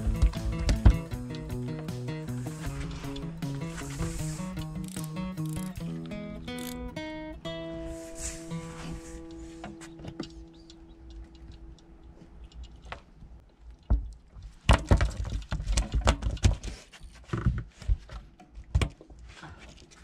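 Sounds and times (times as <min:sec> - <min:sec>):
loud knocks and thumps: 0:00.0 - 0:01.3
guitar music: 0:00.0 - 0:12.1
scattered clicks: 0:04.4 - 0:06.9, 0:10.2 - 0:14.2.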